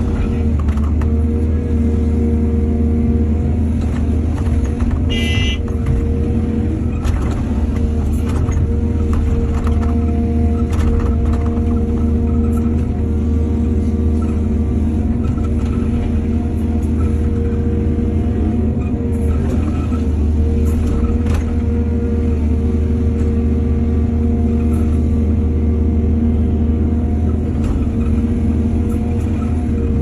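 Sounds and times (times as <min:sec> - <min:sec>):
excavator diesel engine running: 0:00.0 - 0:30.0.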